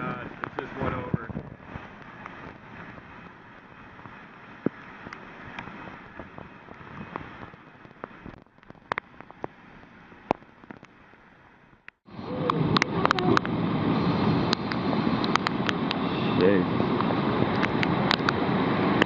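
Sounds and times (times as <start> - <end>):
rushing floodwater: 0.0 - 8.2, 12.1 - 19.0.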